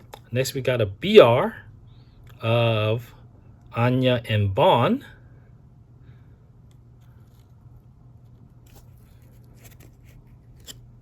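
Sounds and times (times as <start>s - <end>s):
low steady hum: 0.0s - 11.0s
trading cards clicking and rustling: 8.4s - 11.0s.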